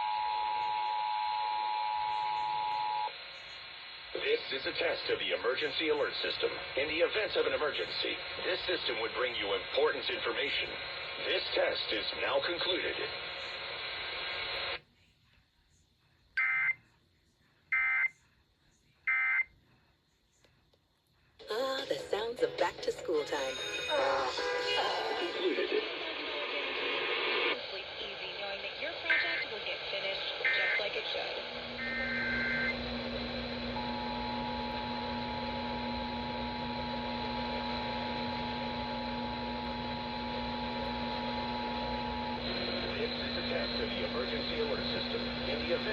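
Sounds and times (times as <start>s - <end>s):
radio hiss: 2.0s - 14.8s, 24.0s - 45.9s
steady low hum: 26.2s - 45.9s.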